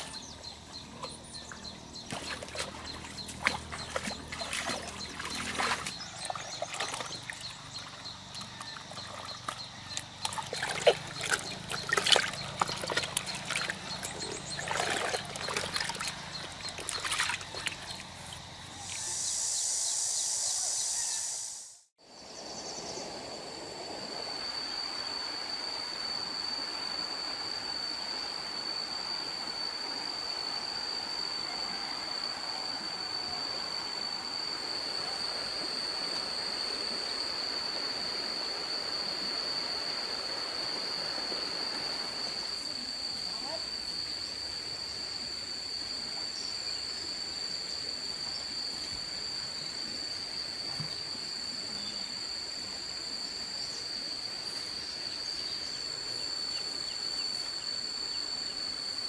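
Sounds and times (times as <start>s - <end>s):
mechanical noise with high whine: 0.0s - 59.0s
water splashing and trickling: 2.0s - 19.0s
burst of hiss: 19.0s - 21.9s.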